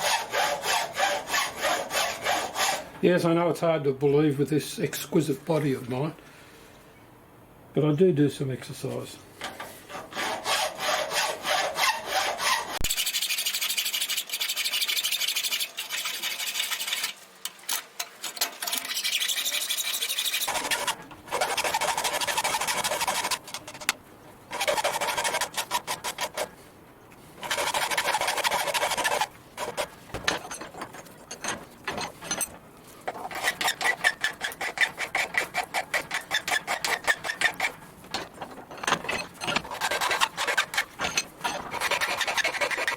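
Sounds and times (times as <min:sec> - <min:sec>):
hand file rasping on steel: 0:00.0 - 0:02.9, 0:09.9 - 0:17.1, 0:18.9 - 0:23.9, 0:24.5 - 0:26.6, 0:27.4 - 0:31.5, 0:33.1 - 0:42.9.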